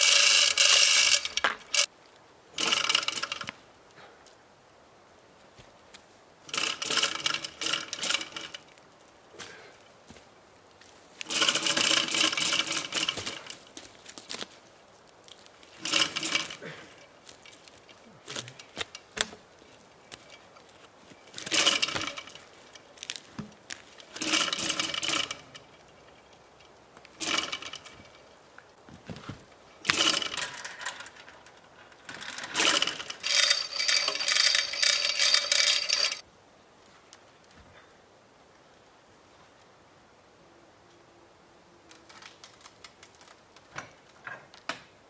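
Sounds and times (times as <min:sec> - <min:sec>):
power drill motor bursts: 0:00.0 - 0:01.9.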